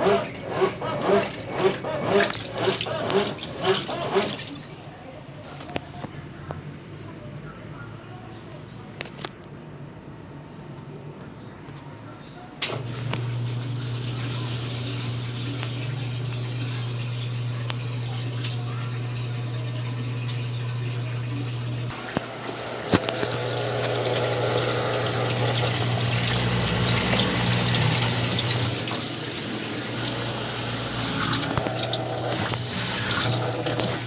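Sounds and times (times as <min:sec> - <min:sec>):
water rushing into washing machine: 0:00.0 - 0:04.9, 0:12.6 - 0:34.0
washing machine click: 0:12.6 - 0:34.0.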